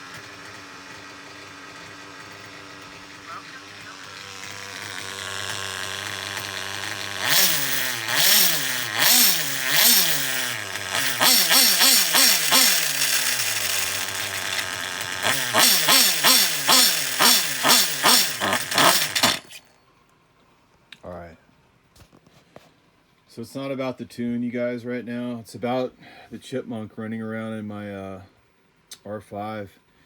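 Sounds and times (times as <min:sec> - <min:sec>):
motorcycle engine revving: 0:00.0 - 0:19.6.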